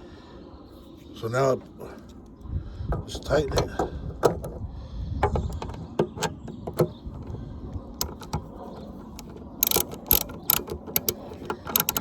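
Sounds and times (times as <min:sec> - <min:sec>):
socket ratchet clicking: 0:08.0 - 0:12.0.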